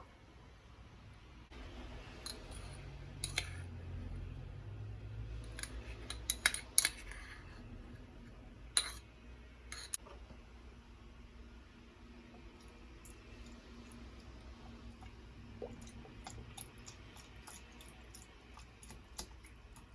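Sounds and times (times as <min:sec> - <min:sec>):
utensils and dishes clinking: 0:02.1 - 0:03.7.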